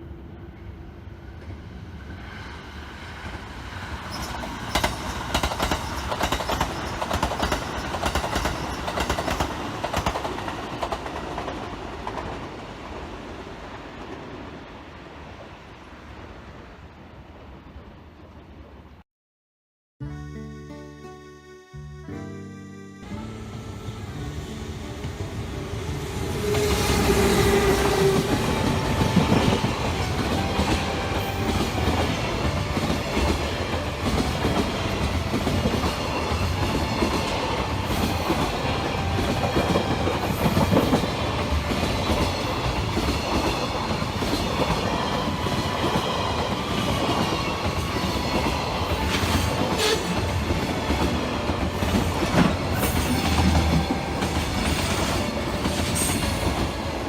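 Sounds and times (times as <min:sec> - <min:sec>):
train wheels clattering on rails: 0:03.2 - 0:12.8, 0:25.0 - 0:57.0.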